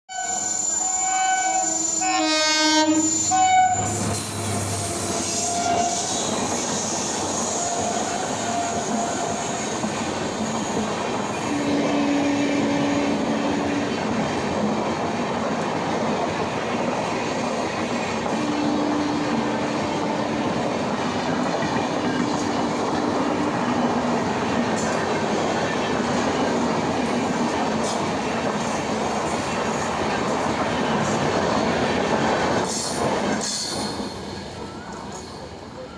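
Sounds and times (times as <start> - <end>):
electric locomotive horn: 0.1 - 9.9, 11.3 - 14.1, 18.2 - 24.9
train wheels rushing on rails: 2.9 - 35.9.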